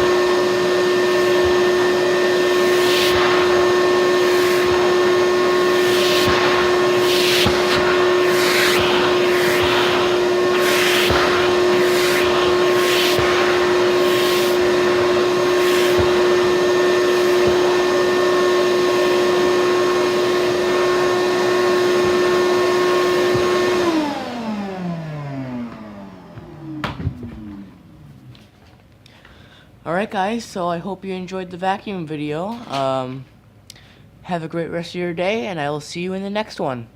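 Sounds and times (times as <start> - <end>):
vacuum air rushing: 0.0 - 28.5
vacuum cleaner motor whine: 0.0 - 28.8.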